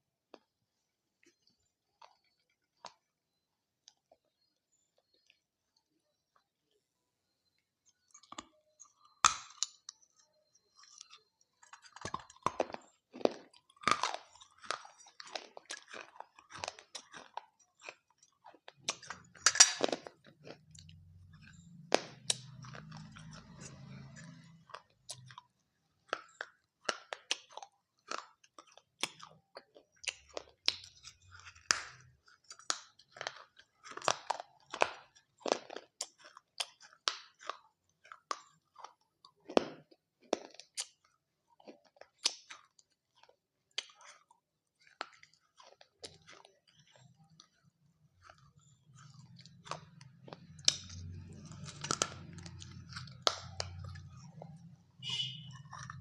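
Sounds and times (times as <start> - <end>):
crisp wafers crunching: 8.0 - 56.0
faint low hum: 46.7 - 56.0.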